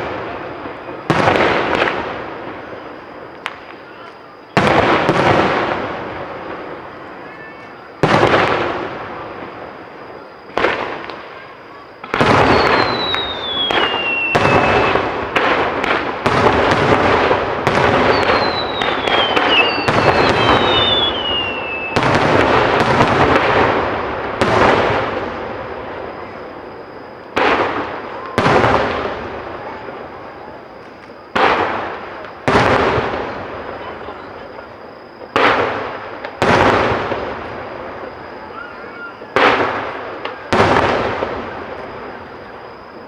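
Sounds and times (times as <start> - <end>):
firework shells bursting: 0.0 - 33.8
firework crackle: 0.0 - 43.0
falling whistling tones: 11.3 - 15.1, 17.9 - 22.1, 37.6 - 39.4.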